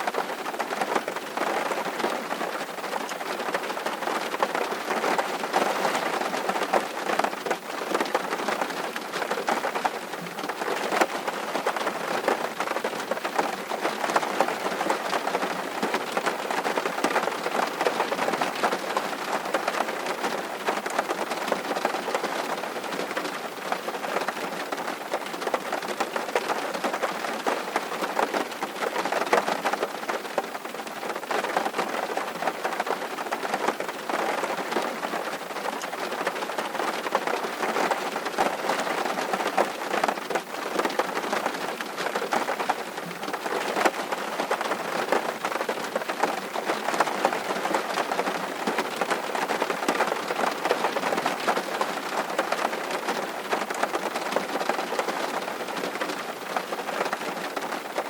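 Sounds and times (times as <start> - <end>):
rain falling: 0.0 - 58.0.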